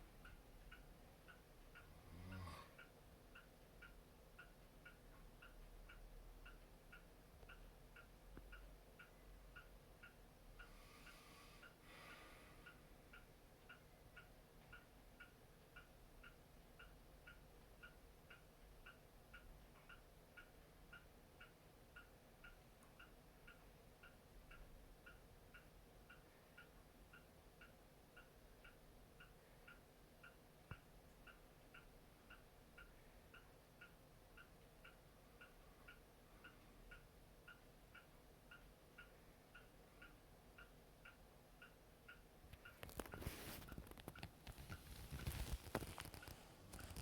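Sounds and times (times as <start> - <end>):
clock ticking: 0.0 - 47.0
soft breath: 10.6 - 12.9.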